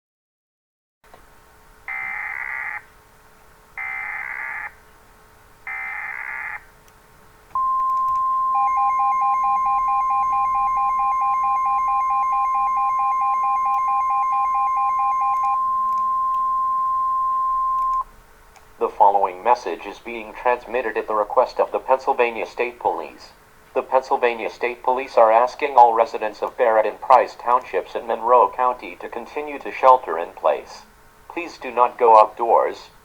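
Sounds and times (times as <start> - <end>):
long steady attention tone: 7.5 - 32.7
data bursts: 7.6 - 18.0
fast-pulsing lower tone: 7.6 - 18.0.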